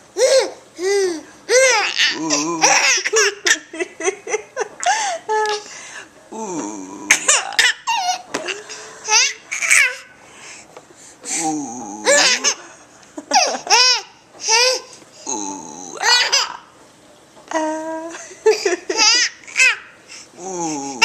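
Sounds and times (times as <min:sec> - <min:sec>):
baby laughing: 0:01.5 - 0:05.6, 0:07.1 - 0:10.2, 0:12.0 - 0:14.9, 0:16.0 - 0:16.7, 0:18.1 - 0:20.0
adult making silly noises: 0:01.9 - 0:03.0, 0:06.3 - 0:07.7, 0:11.2 - 0:12.8, 0:15.2 - 0:16.6, 0:20.4 - 0:21.0.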